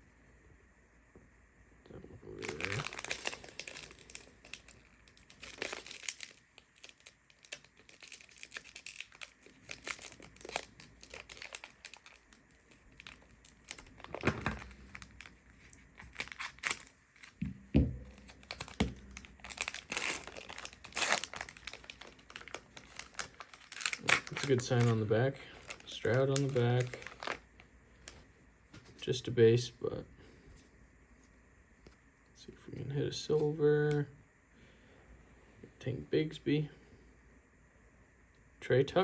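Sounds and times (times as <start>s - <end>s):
plastic wrapper crinkling and tearing: 2.2s - 28.2s
cards being handled: 2.3s - 27.4s.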